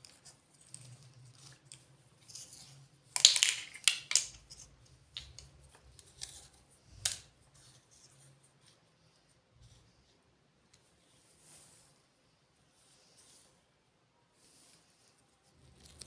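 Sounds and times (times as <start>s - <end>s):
plastic toy pieces clicking: 3.2s - 4.5s.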